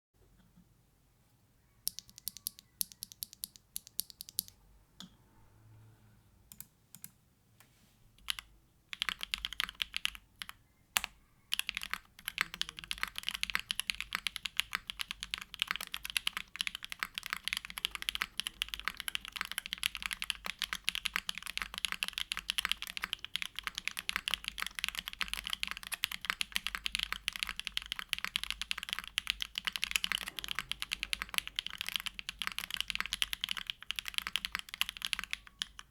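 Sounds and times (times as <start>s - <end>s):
typing on mechanical keyboard: 1.9s - 4.6s, 6.5s - 7.2s, 8.2s - 35.9s.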